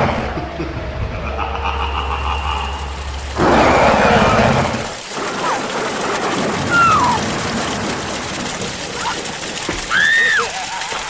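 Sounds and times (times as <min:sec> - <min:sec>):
loud rough roar: 0:00.0 - 0:10.2
noisy backdrop: 0:00.0 - 0:11.0
falling whistle-like cries: 0:05.4 - 0:07.5, 0:09.8 - 0:11.0.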